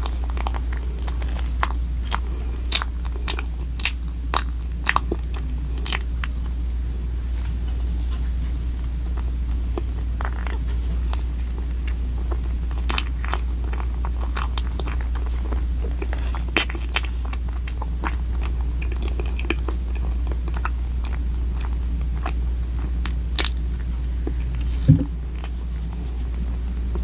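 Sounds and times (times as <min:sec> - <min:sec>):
person chewing and crunching food: 0:00.0 - 0:27.0
low hum: 0:23.3 - 0:27.0.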